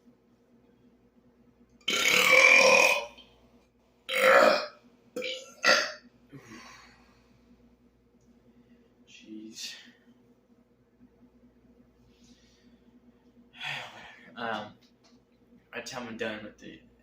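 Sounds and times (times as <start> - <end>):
man burping: 1.9 - 3.2, 4.1 - 6.5.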